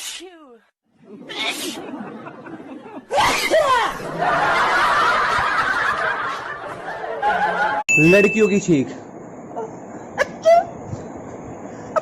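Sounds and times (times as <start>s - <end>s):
loud laughter: 1.0s - 7.8s
snickering: 1.1s - 3.1s.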